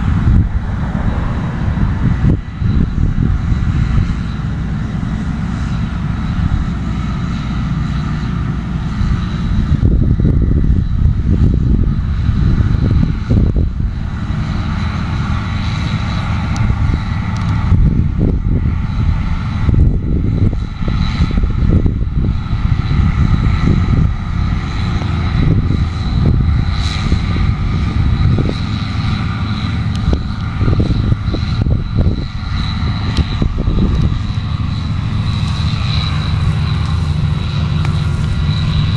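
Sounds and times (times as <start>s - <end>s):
combine harvester drone: 0.0s - 38.9s
high mechanical whine: 0.0s - 38.9s.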